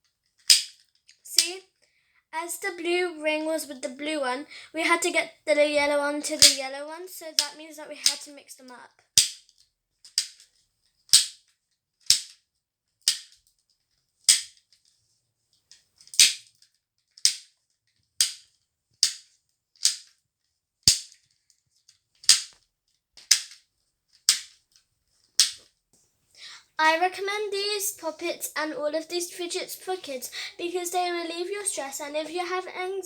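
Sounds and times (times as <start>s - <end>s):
plastic puzzle ball clicking: 0.4s - 0.8s, 6.3s - 6.6s, 7.4s - 8.2s, 9.2s - 10.4s, 12.1s - 12.4s, 13.0s - 13.4s, 14.3s - 14.6s, 16.1s - 16.5s, 17.2s - 17.5s, 18.2s - 20.2s, 20.9s - 21.2s, 22.2s - 22.6s, 23.2s - 23.6s, 24.2s - 24.6s, 25.4s - 25.7s.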